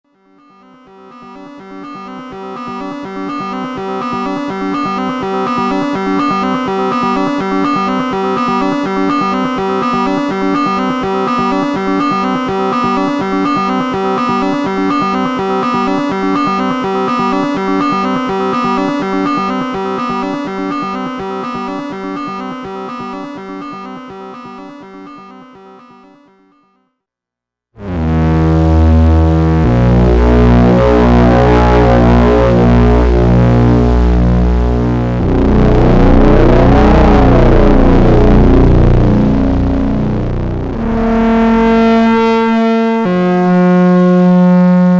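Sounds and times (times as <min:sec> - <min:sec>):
synthesizer repeating short notes: 0:28.5 - 0:43.2.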